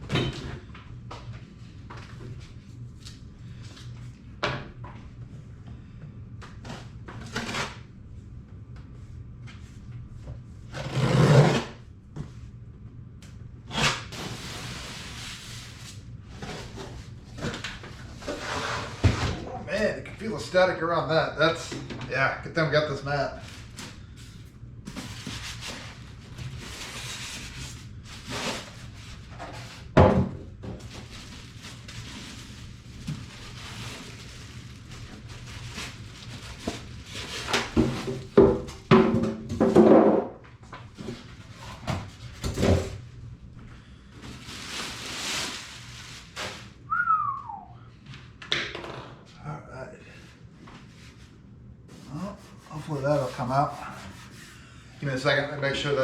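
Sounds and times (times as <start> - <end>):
cardboard packing rustling: 23.3 - 30.0, 30.7 - 38.4, 44.0 - 46.8.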